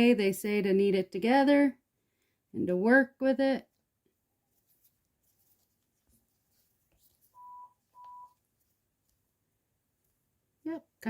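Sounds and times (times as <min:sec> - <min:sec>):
short electronic beeps: 0:07.4 - 0:08.4.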